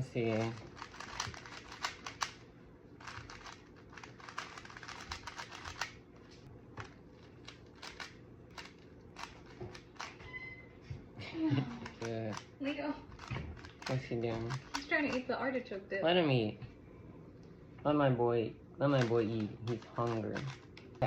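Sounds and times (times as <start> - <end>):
puzzle cube plastic clicks: 0.3 - 2.4, 3.0 - 6.0, 7.4 - 10.2, 13.2 - 15.2, 19.0 - 21.0.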